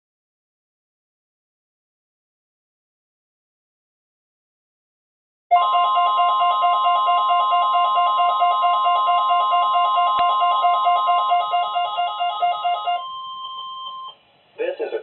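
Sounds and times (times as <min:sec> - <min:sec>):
alternating two-pitch beeping: 0:05.5 - 0:14.2
steady alarm tone: 0:05.5 - 0:14.2.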